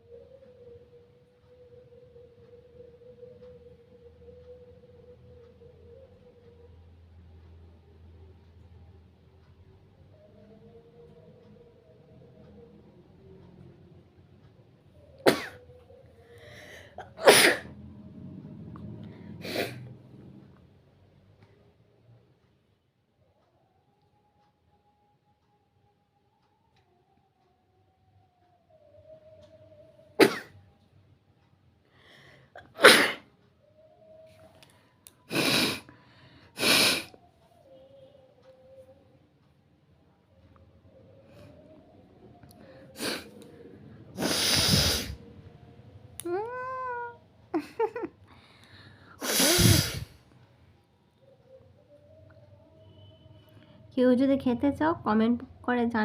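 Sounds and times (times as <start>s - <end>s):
person breathing in: 16.2s - 17.1s
person sneezing: 17.0s - 17.7s, 32.7s - 33.2s, 49.2s - 50.1s
breath drawn in: 44.2s - 45.3s, 49.2s - 50.2s.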